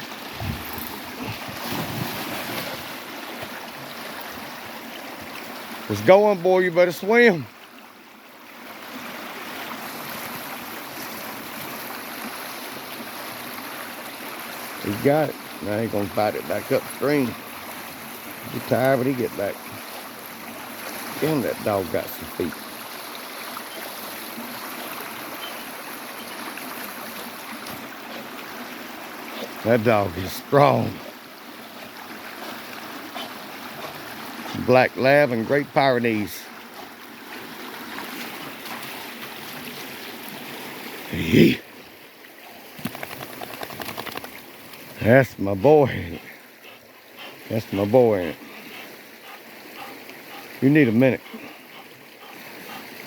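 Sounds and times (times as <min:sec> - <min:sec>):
stream water rushing: 0:00.0 - 0:53.0
wind on microphone: 0:00.3 - 0:01.4.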